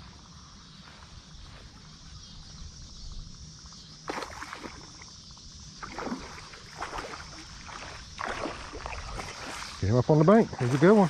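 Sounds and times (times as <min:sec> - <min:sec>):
fish splashing at water surface: 0:04.1 - 0:05.0, 0:05.8 - 0:09.8, 0:10.6 - 0:11.0.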